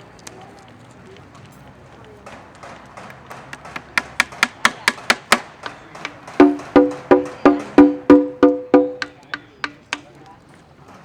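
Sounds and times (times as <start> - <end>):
stick clicking on drum wood: 3.0 - 10.2
pitched drumhead strokes: 3.4 - 10.1.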